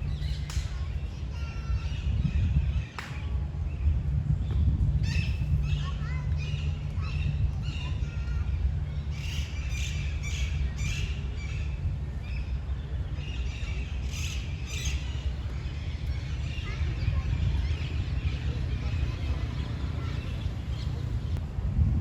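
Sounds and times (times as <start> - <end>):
wind rumble on microphone: 0.0 - 22.0
birds calling harshly: 13.2 - 21.4.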